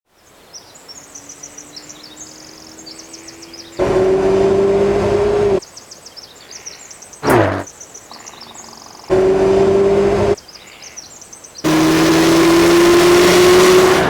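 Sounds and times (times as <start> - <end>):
birds chirping: 0.2 - 14.0
car engine revving high: 1.1 - 5.6, 7.2 - 7.7, 9.1 - 10.4, 11.6 - 14.0.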